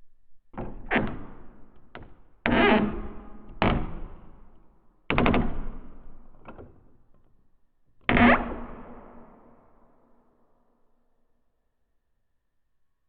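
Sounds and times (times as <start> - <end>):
knocks and bangs on wooden door: 5.1 - 5.9.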